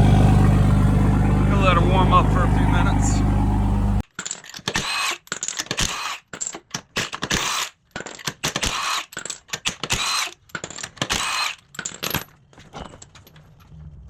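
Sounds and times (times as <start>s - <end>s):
impact wrench bursts: 4.7s - 12.0s.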